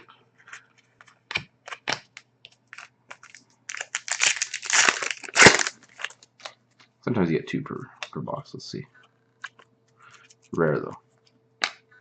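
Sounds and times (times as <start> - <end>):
cards clicking and tapping: 0.5 - 3.4, 11.6 - 11.8
wrapper crinkling: 2.6 - 6.9.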